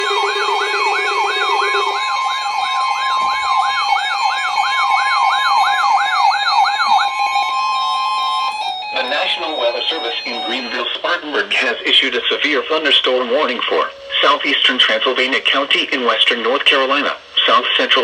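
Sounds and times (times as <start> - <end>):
lower alert tone: 0.0 - 3.7
steady high alert tone: 0.0 - 16.9
warbling siren: 0.0 - 17.0.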